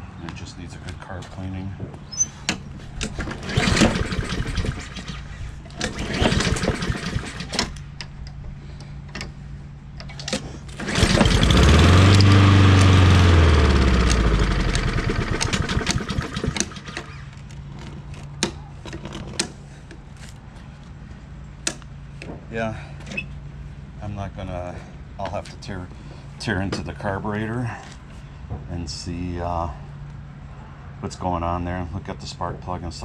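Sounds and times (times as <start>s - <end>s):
lawnmower engine sputtering: 3.0s - 7.9s, 10.2s - 18.0s.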